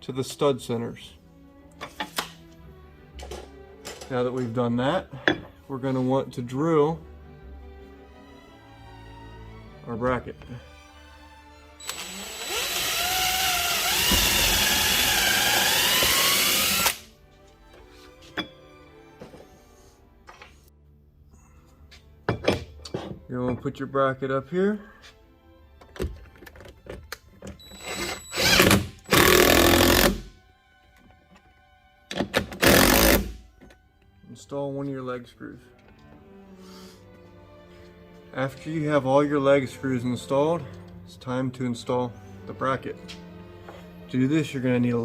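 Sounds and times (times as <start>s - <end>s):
power drill boring into wood: 11.8s - 17.1s, 27.6s - 30.3s, 32.5s - 33.4s.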